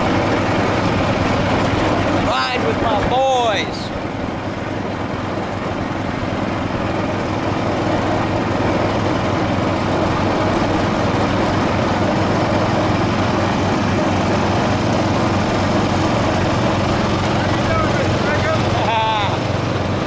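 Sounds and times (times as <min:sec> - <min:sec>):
small engine running: 0:00.0 - 0:20.0.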